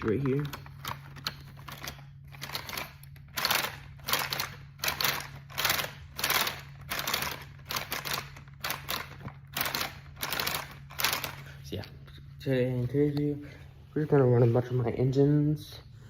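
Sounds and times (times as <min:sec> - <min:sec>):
small model engine clattering: 0:01.7 - 0:11.4.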